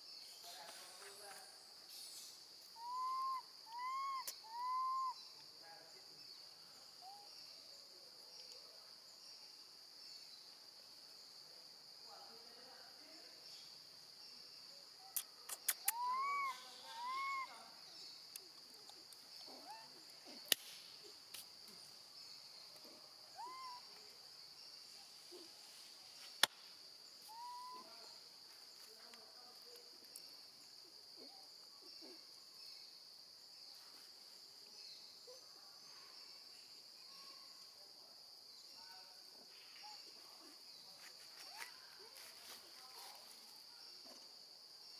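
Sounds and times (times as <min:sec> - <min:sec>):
baby monkey calling: 0:02.8 - 0:05.1, 0:15.8 - 0:17.5, 0:23.4 - 0:23.8, 0:27.3 - 0:27.8.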